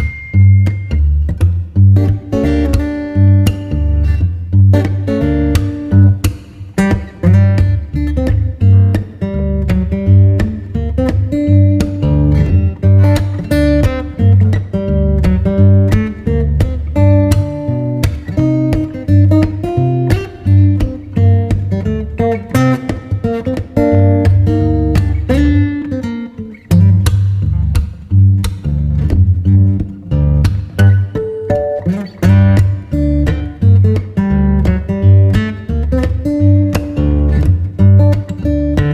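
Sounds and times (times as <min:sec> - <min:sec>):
steady beat: 0:00.0 - 0:04.1
bass line: 0:00.0 - 0:06.3, 0:06.9 - 0:25.8, 0:26.7 - 0:31.2
acoustic guitar strumming: 0:00.0 - 0:38.9.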